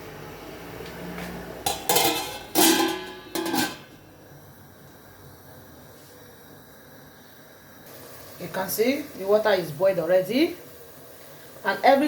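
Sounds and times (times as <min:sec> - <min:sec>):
metal pot lid clanking: 0:01.6 - 0:04.0
faint steady hiss: 0:01.7 - 0:12.0.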